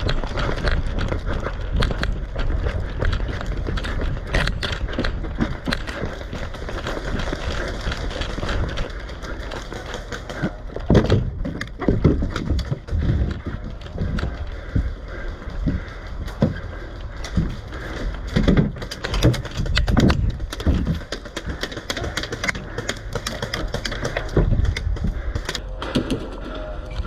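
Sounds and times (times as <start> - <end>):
footsteps: 0.0 - 27.0
gear rattling with knocks and clicks: 0.0 - 27.0.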